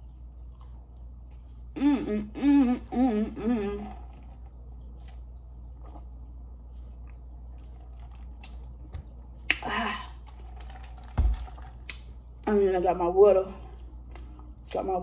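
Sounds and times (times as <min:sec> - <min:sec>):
quiet chewing: 0:00.0 - 0:01.8, 0:03.8 - 0:09.6, 0:13.6 - 0:14.8
steady low hum: 0:00.0 - 0:15.0.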